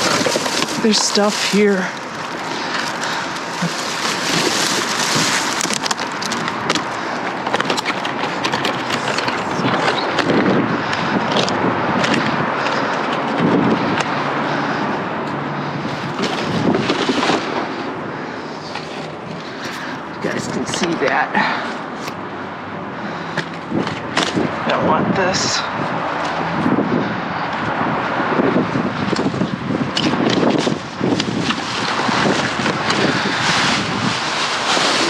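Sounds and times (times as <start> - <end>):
rustling and crinkling bags: 0.0 - 13.6, 15.9 - 22.1, 30.1 - 35.0.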